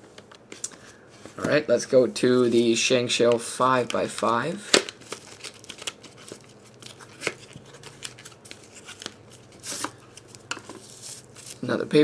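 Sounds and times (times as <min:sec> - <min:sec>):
paper rustling: 0:02.3 - 0:11.7
packaging clicks: 0:03.8 - 0:10.5.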